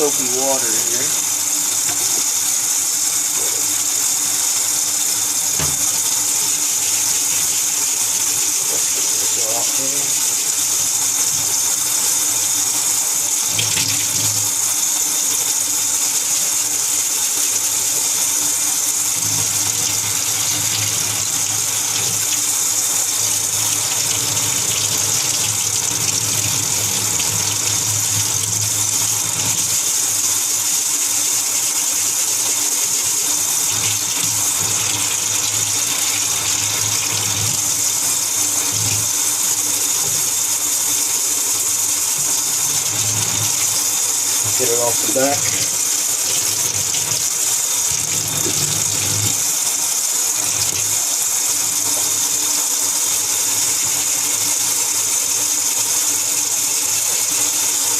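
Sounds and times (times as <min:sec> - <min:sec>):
tap water running into sink: 0:00.0 - 0:57.9.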